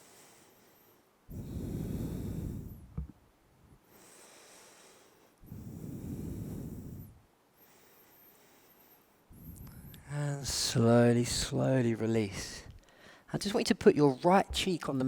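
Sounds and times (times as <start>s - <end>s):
person breathing heavily: 0.0s - 3.1s, 3.8s - 10.1s, 12.8s - 13.3s.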